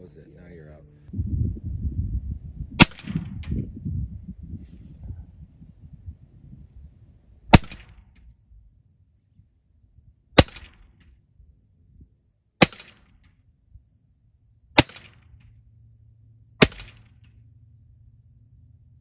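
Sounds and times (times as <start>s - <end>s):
air rifle shots: 2.8s - 3.5s, 7.5s - 8.2s, 10.4s - 11.0s, 12.6s - 13.3s, 14.8s - 15.5s, 16.6s - 17.3s.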